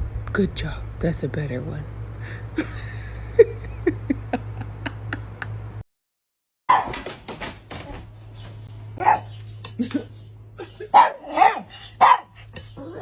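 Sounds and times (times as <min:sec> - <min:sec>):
steady low hum: 0:00.0 - 0:05.8.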